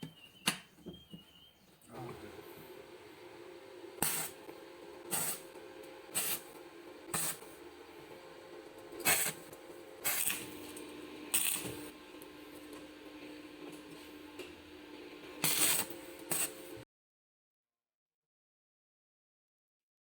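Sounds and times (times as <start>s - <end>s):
saw cutting wood: 1.9s - 8.2s, 8.8s - 16.8s
steady hum: 1.9s - 16.8s.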